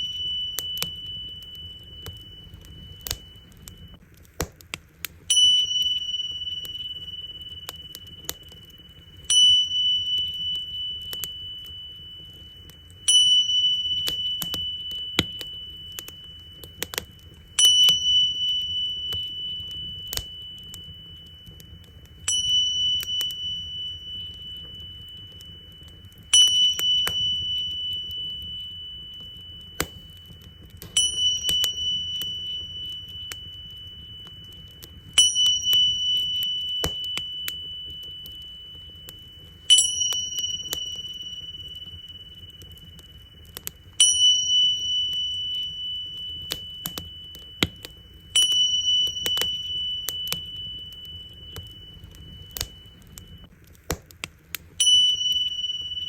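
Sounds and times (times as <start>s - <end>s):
bonfire crackling: 0.0s - 56.0s
cymbals ringing: 30.9s - 34.6s, 39.7s - 42.0s.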